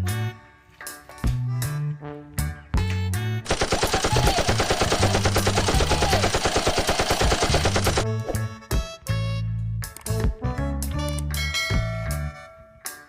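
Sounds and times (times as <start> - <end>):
background music: 0.0 - 13.0
toy gun electronic firing: 3.5 - 8.0.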